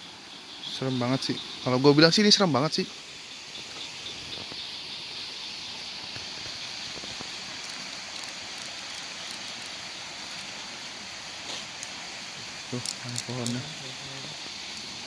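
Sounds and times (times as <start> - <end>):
even rushing hiss: 0.0 - 15.0
insect chorus: 0.0 - 15.0
faint ticks: 6.0 - 10.5, 11.5 - 12.0.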